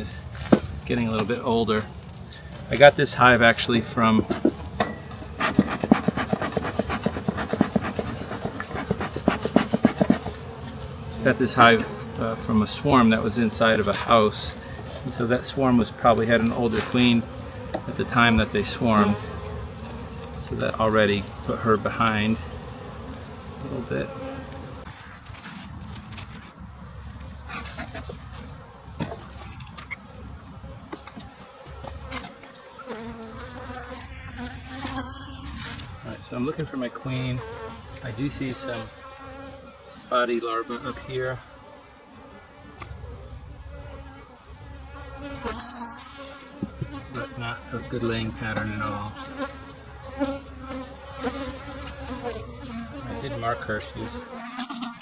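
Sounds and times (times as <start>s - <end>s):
honeybees buzzing: 0.0s - 25.4s, 26.2s - 55.0s
bees flying past close: 3.7s - 25.3s, 27.4s - 55.0s.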